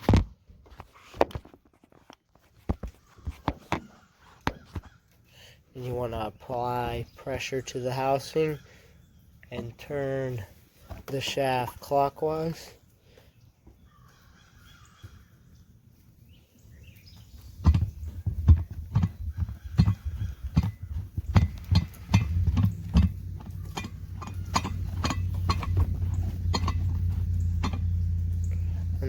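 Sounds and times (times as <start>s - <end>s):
low steady hum: 15.4s - 29.0s
pump housing clacks and knocks: 17.6s - 29.0s.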